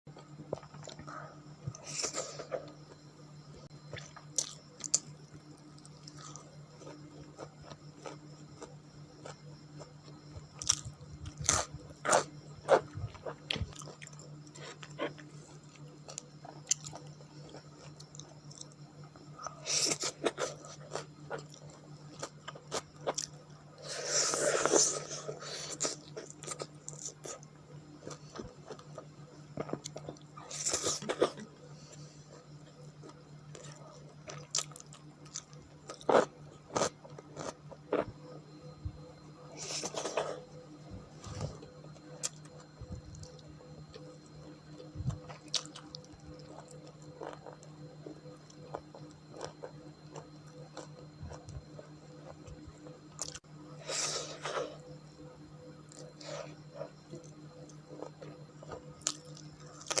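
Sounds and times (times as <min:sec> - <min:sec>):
close chewing and biting: 0:41.2 - 0:53.4, 0:55.9 - 1:00.0.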